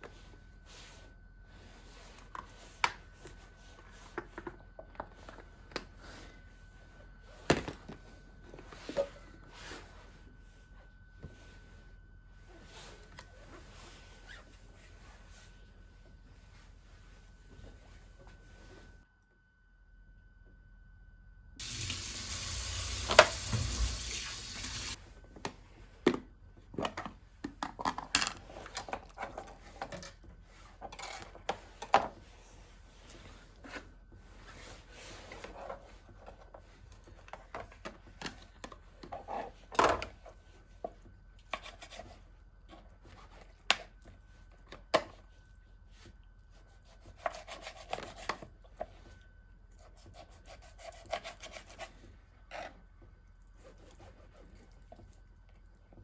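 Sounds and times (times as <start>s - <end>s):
steady hiss: 21.6s - 25.0s.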